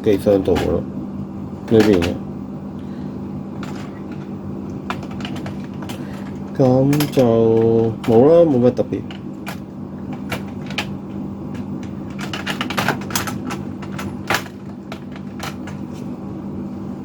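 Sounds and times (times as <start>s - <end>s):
low hum: 0.0s - 17.0s
computer hardware clicks and taps: 1.7s - 2.2s, 3.6s - 15.8s.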